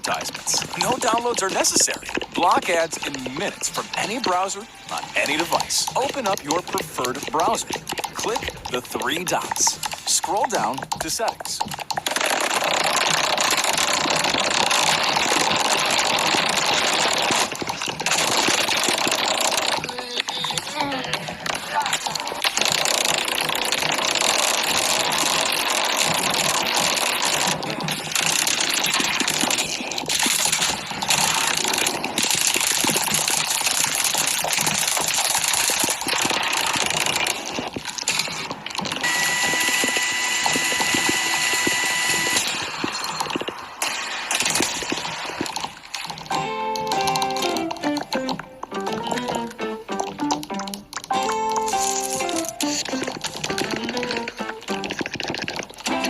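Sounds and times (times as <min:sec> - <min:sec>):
harsh rattling noise: 0:00.0 - 0:56.0
loud rapid clattering clicks: 0:00.0 - 0:56.0.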